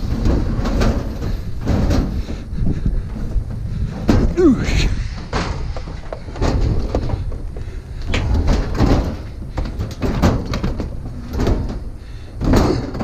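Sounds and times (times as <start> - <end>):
knocks and bangs: 4.0 - 13.0.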